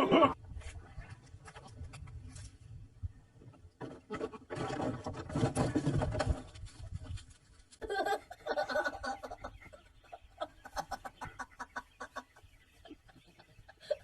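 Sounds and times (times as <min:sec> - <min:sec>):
poultry clucking: 0:03.8 - 0:14.0.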